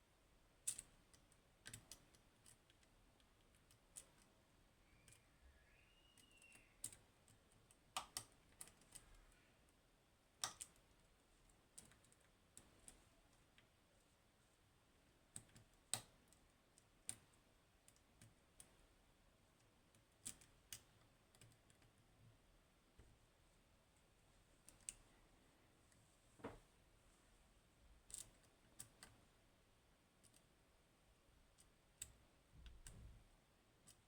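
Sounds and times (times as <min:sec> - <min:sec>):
lock pick clicking pins: 0:00.6 - 0:04.3.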